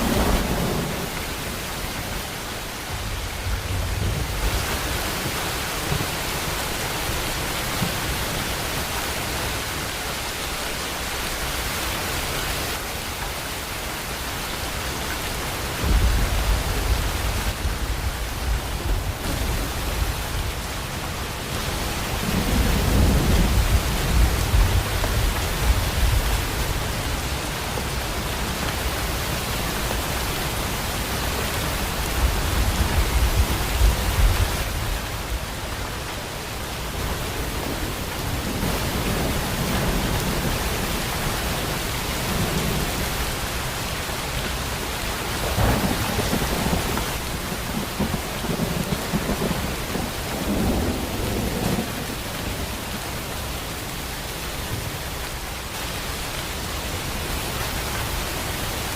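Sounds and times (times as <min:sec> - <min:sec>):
thunder rumbling: 0:00.0 - 0:09.0, 0:15.7 - 0:29.4, 0:45.2 - 0:53.5
heavy rain: 0:00.0 - 0:58.9.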